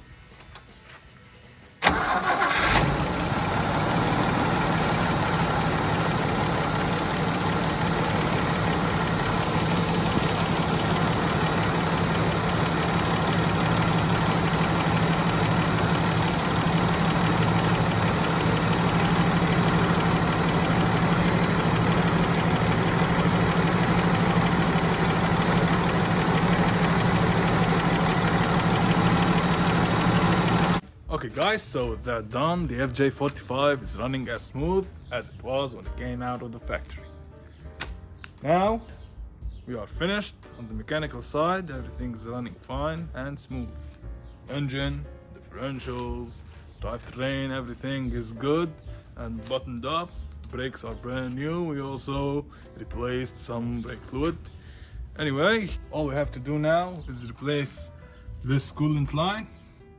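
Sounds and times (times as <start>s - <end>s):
engine starting and idling: 1.8s - 30.8s.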